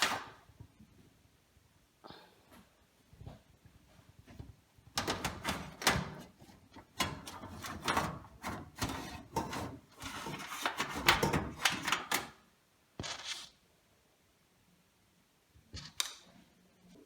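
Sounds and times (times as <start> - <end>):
metal and plastic parts rattling: 5.0 - 12.4.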